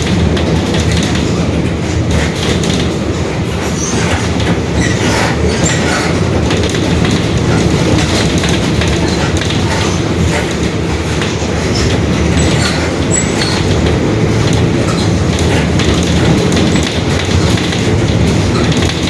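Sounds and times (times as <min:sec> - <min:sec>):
bus body rattling: 0:00.0 - 0:19.0
bus engine running: 0:00.0 - 0:19.0
high squeaks: 0:03.5 - 0:06.7, 0:11.5 - 0:15.5.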